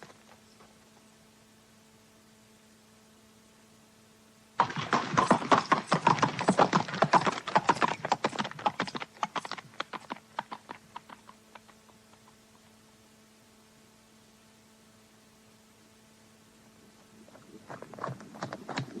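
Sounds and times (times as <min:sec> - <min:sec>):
horses galloping hoofbeats: 0:04.6 - 0:12.7, 0:17.0 - 0:19.0.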